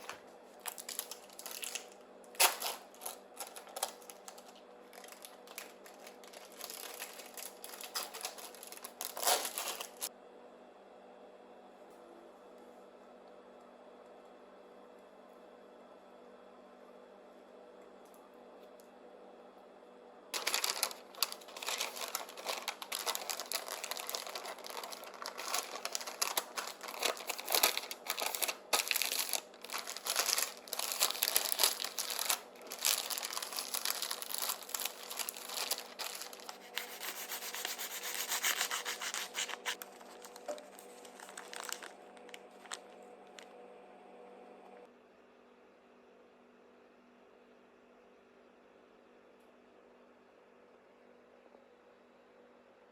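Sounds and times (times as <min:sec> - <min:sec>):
rubbing and crinkling handling noise: 0:00.0 - 0:10.1, 0:20.4 - 0:43.5.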